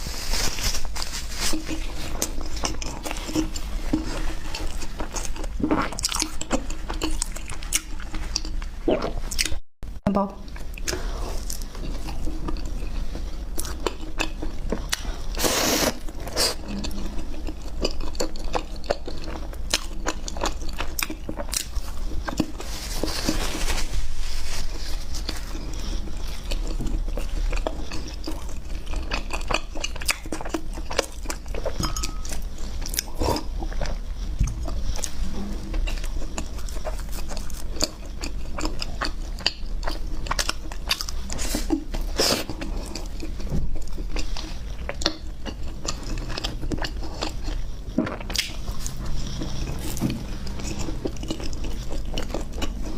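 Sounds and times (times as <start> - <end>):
person chewing crunchy food: 0.0 - 9.6, 10.4 - 52.9.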